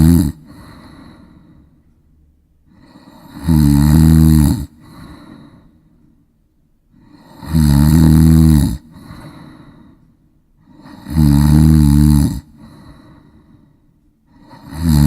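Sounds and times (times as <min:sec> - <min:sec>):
cat snoring: 0:00.0 - 0:01.3, 0:02.7 - 0:05.5, 0:07.0 - 0:09.6, 0:10.6 - 0:13.2, 0:14.3 - 0:15.0.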